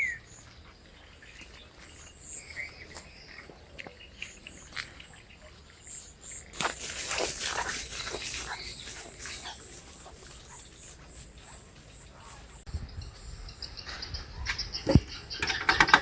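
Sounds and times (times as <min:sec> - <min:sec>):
scratchy rustling strokes: 0:06.6 - 0:12.0.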